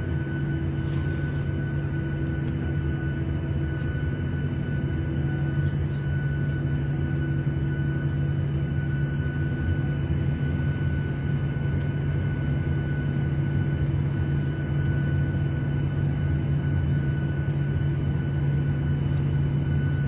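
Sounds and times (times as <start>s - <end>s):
faint hum tones: 0.0s - 20.0s
jet engine cabin drone: 0.0s - 20.0s.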